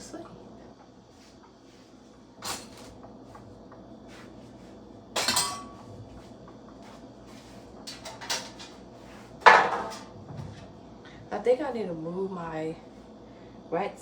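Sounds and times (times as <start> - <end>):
kitchenware clinking: 5.2 - 5.8, 9.4 - 10.1.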